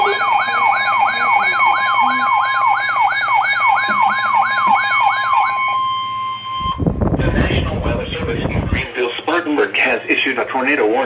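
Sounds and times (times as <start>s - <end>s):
electronic alert siren sweeping: 0.0s - 7.6s
steady high alert tone: 0.0s - 7.8s.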